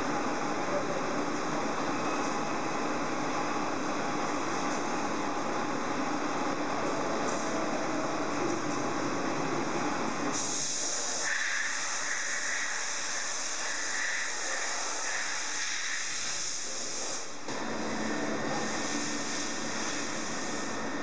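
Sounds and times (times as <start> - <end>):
milling machine hissing: 10.3 - 17.4, 18.3 - 21.0.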